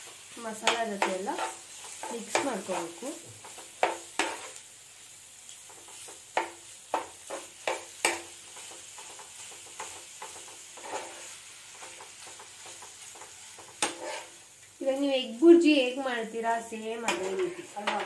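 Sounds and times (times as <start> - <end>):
meat sizzling in a frying pan: 0.0 - 18.0
utensil scraping a pan: 0.7 - 4.6, 7.3 - 14.4, 16.8 - 18.0.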